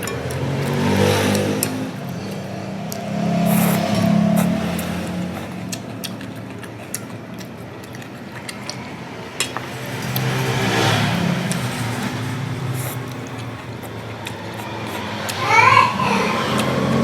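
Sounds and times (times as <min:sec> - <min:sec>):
vehicle engine passing: 0:00.0 - 0:06.8, 0:08.4 - 0:17.0.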